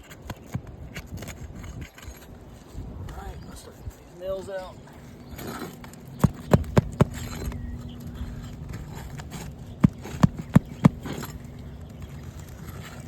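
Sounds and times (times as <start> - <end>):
tool knocking on nails: 6.2 - 7.6, 9.2 - 11.4.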